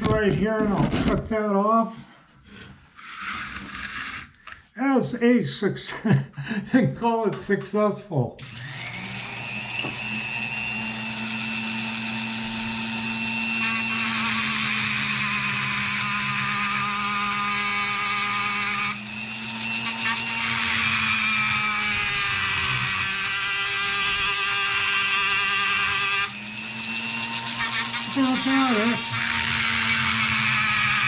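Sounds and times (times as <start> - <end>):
electric grinder grinding steel: 8.4 - 31.0.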